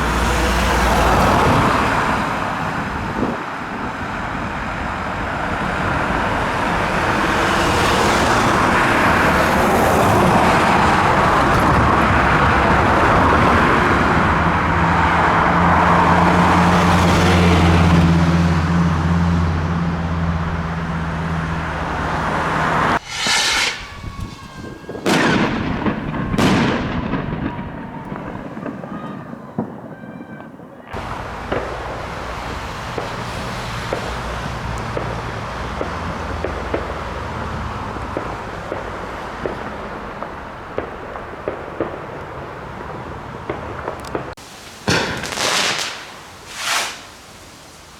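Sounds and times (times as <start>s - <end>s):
vehicle engine hum: 0.0s - 23.0s
road noise: 0.0s - 47.9s
firework bangs with whistles: 22.9s - 47.9s.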